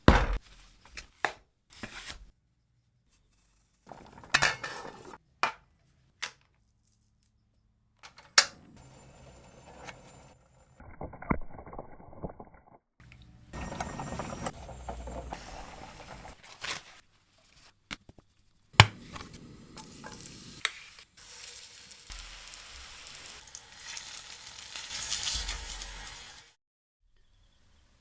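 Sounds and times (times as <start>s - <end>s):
cookware and utensils clinking: 3.9s - 5.2s.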